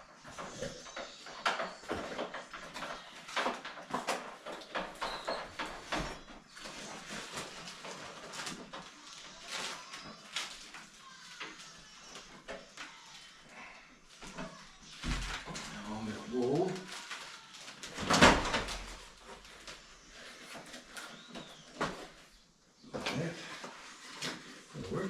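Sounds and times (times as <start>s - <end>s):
shower parts knocking and scraping: 0.0s - 13.5s.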